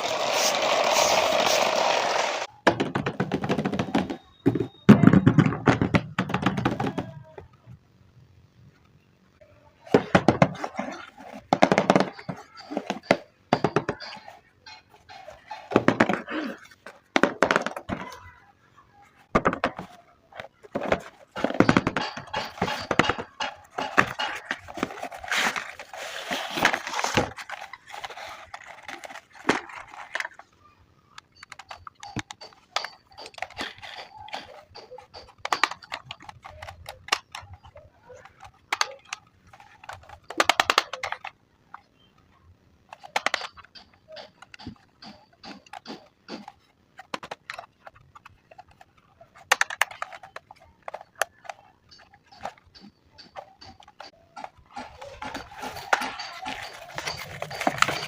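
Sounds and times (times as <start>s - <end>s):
knocks and clicks: 11.4s - 18.2s, 19.3s - 25.9s, 31.1s - 58.0s
crinkly rustling: 23.3s - 30.7s.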